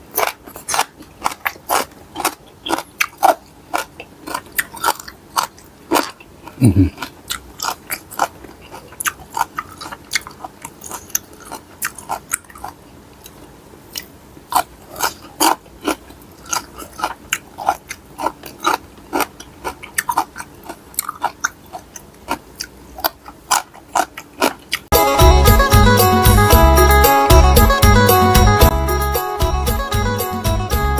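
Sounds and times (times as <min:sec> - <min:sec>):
person chewing crunchy food: 0:00.0 - 0:25.0
music: 0:24.9 - 0:30.9.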